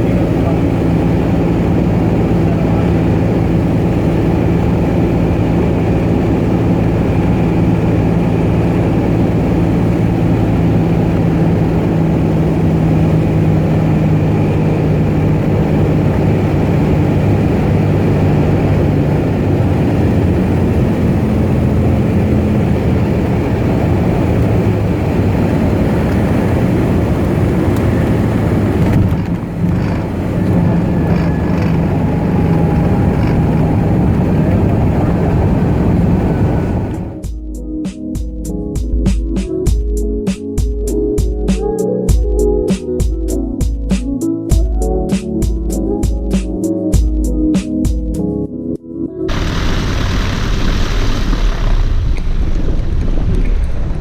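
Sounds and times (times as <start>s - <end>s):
plane engine and propeller droning: 0.0s - 37.3s, 49.3s - 54.0s.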